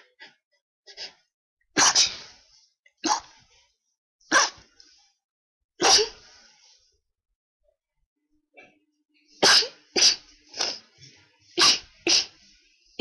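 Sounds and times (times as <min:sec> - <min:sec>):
person sneezing: 0:01.8 - 0:02.4, 0:03.0 - 0:03.4, 0:04.3 - 0:04.6, 0:05.8 - 0:06.3, 0:09.4 - 0:10.8, 0:11.6 - 0:12.4.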